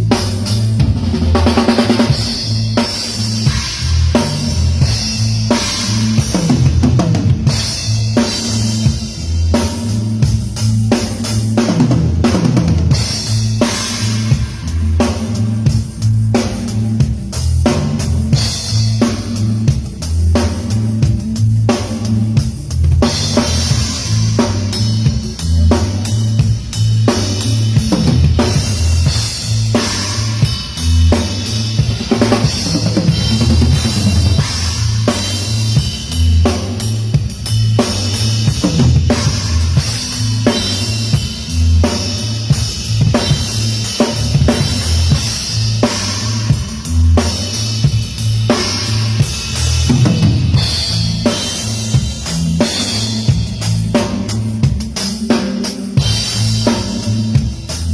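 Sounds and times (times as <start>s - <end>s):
bass line of low notes: 0.0s - 54.6s
cymbals: 0.0s - 57.9s
drum kit groove: 0.0s - 57.9s.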